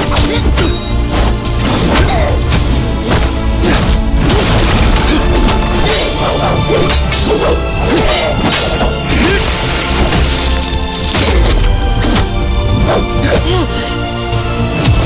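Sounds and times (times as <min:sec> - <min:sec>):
background music: 0:00.0 - 0:15.0
smashing whacking impacts: 0:03.1 - 0:06.2.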